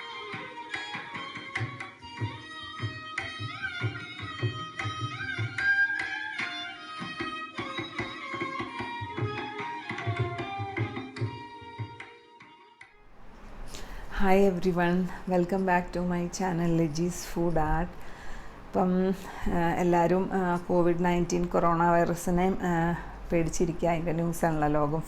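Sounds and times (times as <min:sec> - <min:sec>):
hand drum rhythm: 0:00.0 - 0:12.1.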